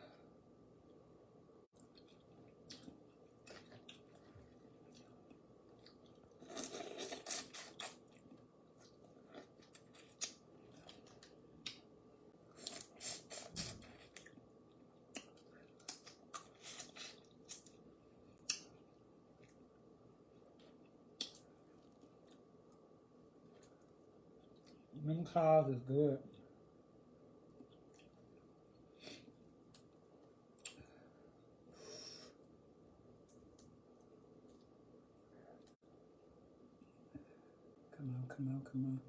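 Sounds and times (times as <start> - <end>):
chewing: 1.8 - 11.8.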